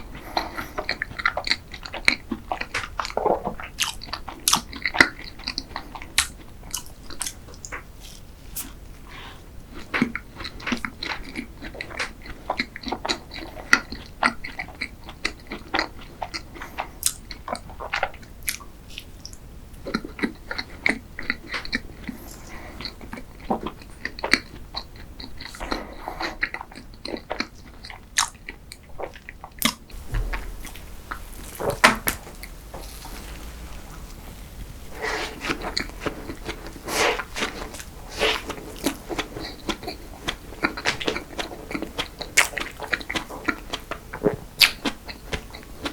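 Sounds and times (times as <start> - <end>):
chewing and biting: 9.7 - 45.9.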